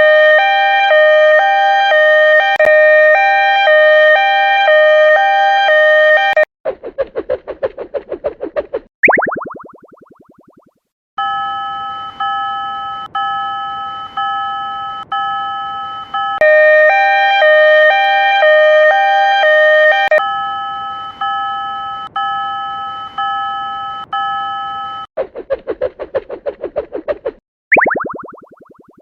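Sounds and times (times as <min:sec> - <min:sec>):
two-tone crossing alarm: 0:00.0 - 0:06.5, 0:11.2 - 0:25.1.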